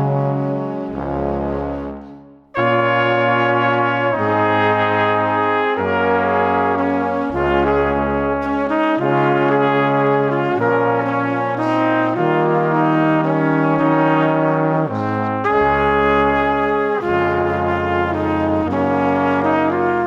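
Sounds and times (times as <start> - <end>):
brass chords music: 0.0 - 20.0.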